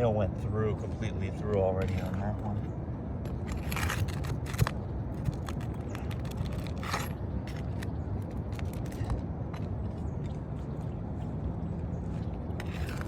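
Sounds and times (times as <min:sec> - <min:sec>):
pry bar scraping on shingles: 0:01.2 - 0:02.7, 0:03.3 - 0:10.3, 0:12.2 - 0:13.0.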